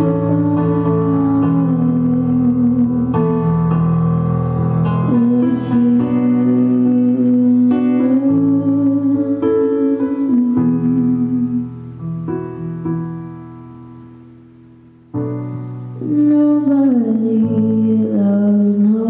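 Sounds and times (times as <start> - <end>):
woman singing: 0.0 - 3.8, 5.0 - 12.0, 16.0 - 19.0
keyboard chords: 0.0 - 19.0.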